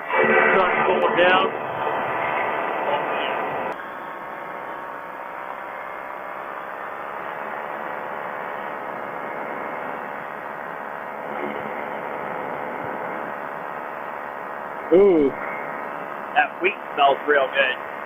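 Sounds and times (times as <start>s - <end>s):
aircraft engine and propeller drone: 0.0s - 18.0s
wind noise: 0.3s - 3.7s.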